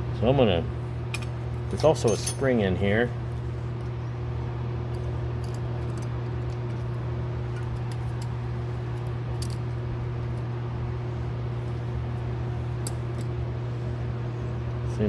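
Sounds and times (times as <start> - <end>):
faint clicks of metal parts: 1.1 - 2.6, 4.9 - 9.7.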